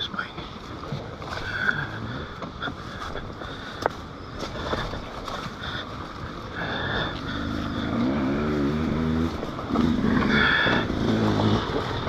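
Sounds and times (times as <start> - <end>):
dirt bike engine low revs: 4.4 - 12.0.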